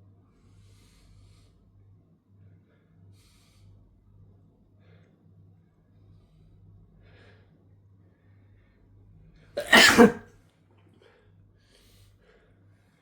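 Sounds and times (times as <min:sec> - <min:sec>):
man sneezing: 0:09.6 - 0:10.2.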